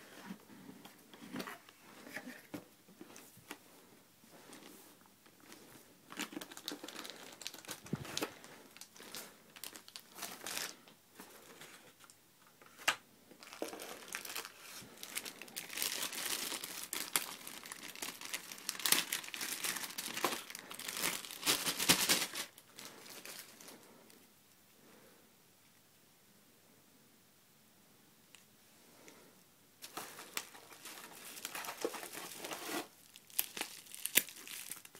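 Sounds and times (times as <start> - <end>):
packaging crinkling: 5.4 - 11.6, 13.4 - 23.8, 29.8 - 34.9
packaging snapping: 15.2 - 22.6.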